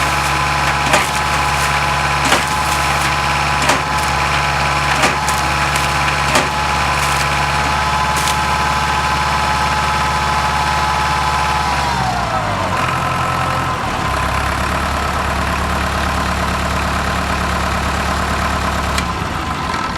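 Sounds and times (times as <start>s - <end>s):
sharp knocks: 0.0s - 8.6s
pump engine running: 0.0s - 19.9s.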